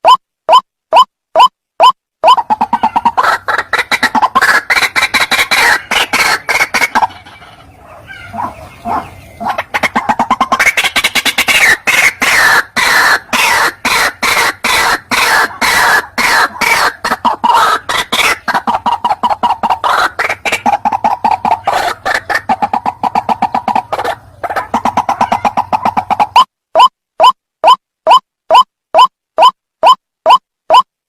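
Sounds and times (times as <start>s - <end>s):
waterhen harsh croaking calls: 2.2s - 26.9s.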